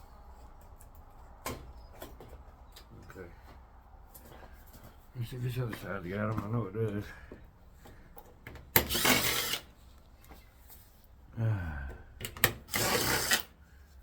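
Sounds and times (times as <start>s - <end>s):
man sighing: 11.3s - 12.2s.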